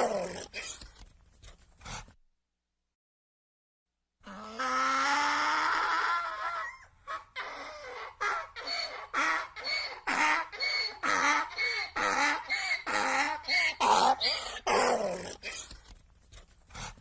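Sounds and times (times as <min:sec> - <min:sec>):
donkey braying: 0:04.3 - 0:15.5.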